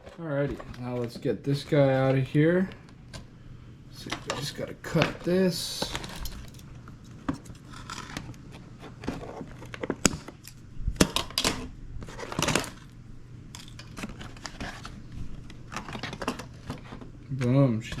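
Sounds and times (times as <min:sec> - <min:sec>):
plastic and cardboard crinkling: 0:13.6 - 0:17.1.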